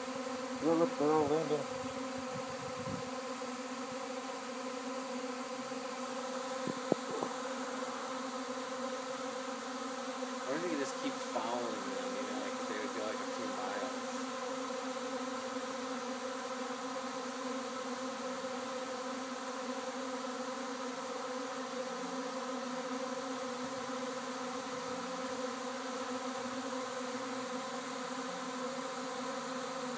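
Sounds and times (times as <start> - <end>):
bee swarm buzzing: 0.0 - 29.9
single bees flying past: 0.0 - 29.9.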